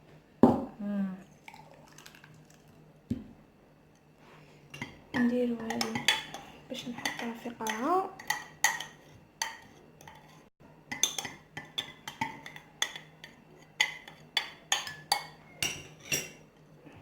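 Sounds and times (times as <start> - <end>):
metal spoon clinking against bowl: 4.8 - 16.4.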